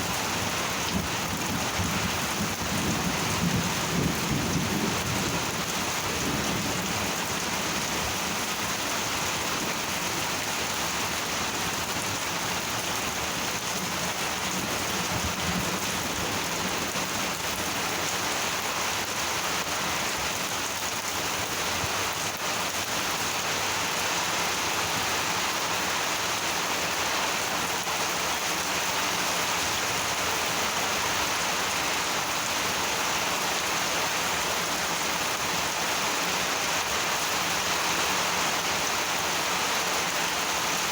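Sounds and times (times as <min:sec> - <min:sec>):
heavy rain falling: 0:00.0 - 0:40.9
low rumble of thunder: 0:00.8 - 0:07.4.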